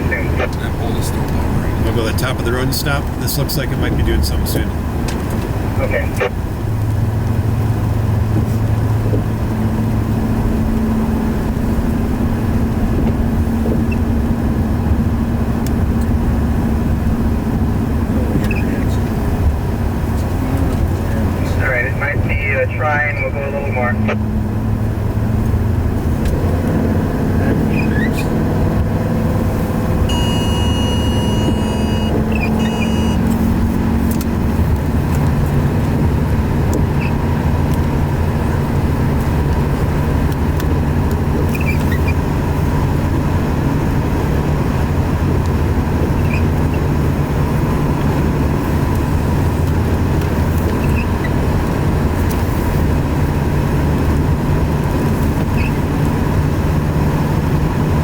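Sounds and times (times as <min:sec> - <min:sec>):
vehicle engine and road noise: 0:00.0 - 0:58.0
electronic beeps: 0:30.1 - 0:33.2.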